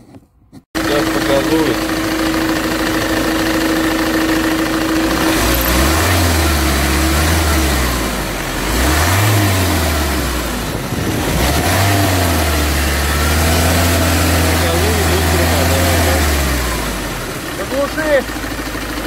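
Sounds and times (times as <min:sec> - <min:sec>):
engine knock: 0:00.8 - 0:19.0
van engine revving: 0:00.8 - 0:19.0.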